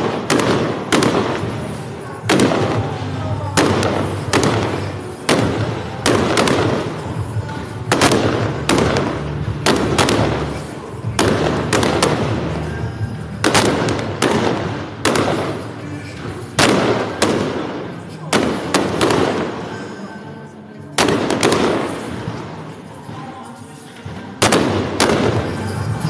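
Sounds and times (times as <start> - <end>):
firework shells bursting: 0.0 - 12.7, 13.4 - 15.8.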